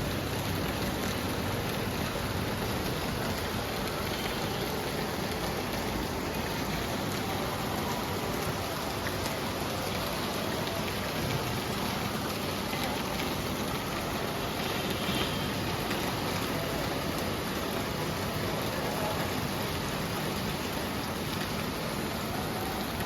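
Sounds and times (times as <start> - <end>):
steady rain falling: 0.0 - 23.0.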